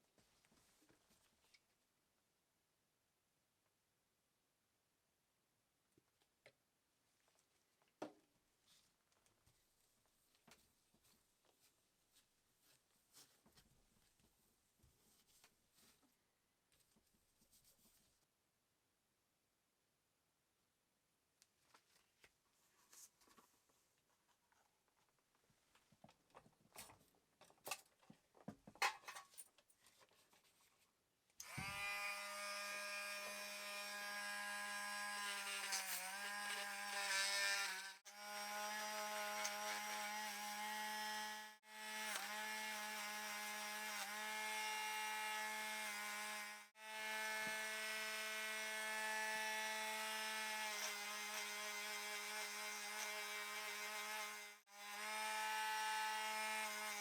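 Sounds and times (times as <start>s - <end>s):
small electric motor running: 31.4s - 57.0s.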